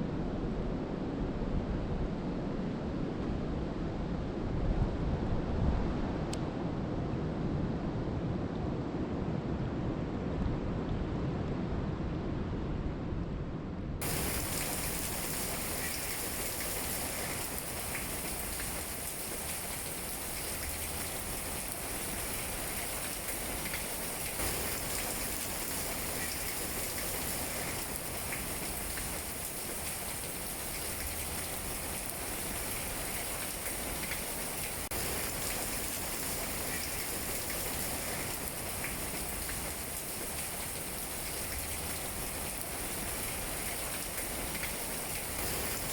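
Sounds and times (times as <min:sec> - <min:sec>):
steady rain falling: 0:14.0 - 0:45.9.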